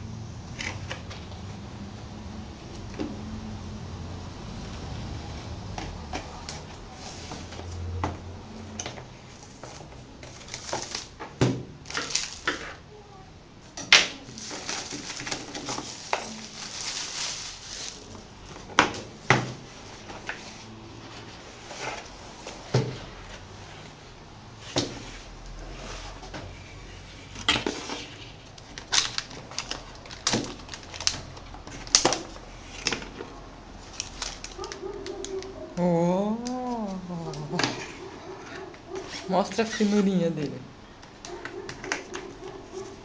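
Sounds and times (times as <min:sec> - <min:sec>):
packaging rustling: 0:09.4 - 0:11.2, 0:11.8 - 0:12.8, 0:14.2 - 0:18.3, 0:27.7 - 0:35.8.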